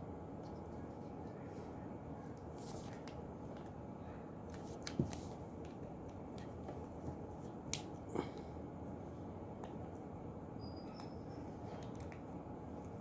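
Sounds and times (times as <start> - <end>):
low background noise: 0.0 - 13.0
small clicks and taps of parts: 11.8 - 12.3.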